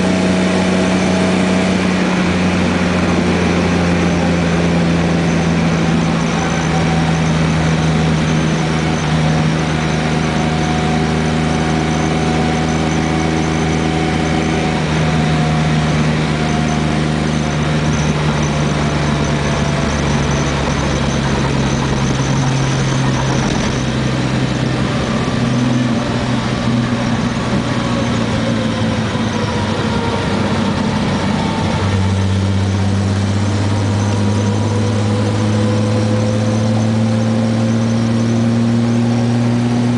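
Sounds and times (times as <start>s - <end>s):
car driving with low hum: 0.0s - 39.9s
faint drifting whine: 0.0s - 39.9s.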